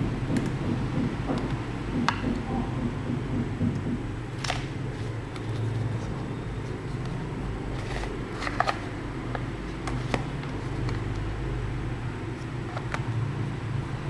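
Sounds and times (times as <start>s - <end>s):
steady low hum: 0.0s - 14.0s
plastic toys clicking and tapping: 12.4s - 13.2s.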